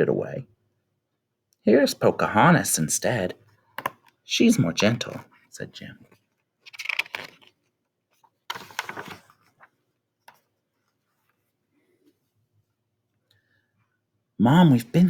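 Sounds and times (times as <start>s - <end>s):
book pages rustling: 4.8s - 12.2s.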